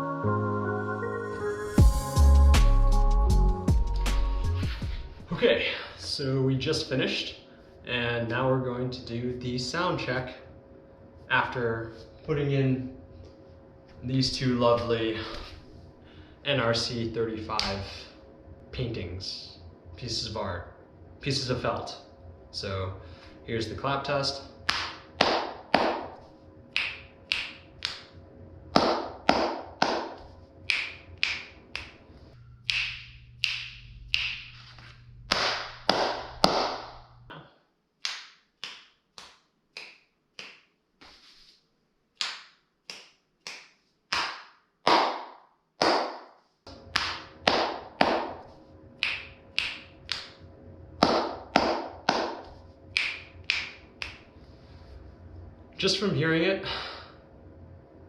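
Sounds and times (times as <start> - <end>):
hand claps with room echo: 17.6 - 17.8, 24.7 - 26.2, 26.8 - 28.1, 28.8 - 32.0, 32.7 - 37.0, 38.0 - 41.5, 42.2 - 46.3, 47.0 - 50.4, 51.0 - 54.3.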